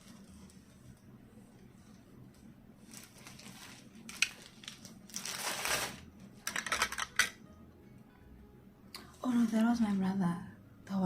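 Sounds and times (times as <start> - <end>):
packaging crinkling: 2.8 - 7.2.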